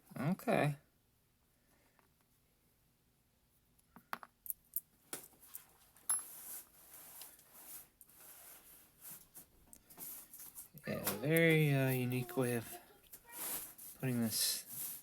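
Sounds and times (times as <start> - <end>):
handling and rubbing noise: 5.3 - 15.0.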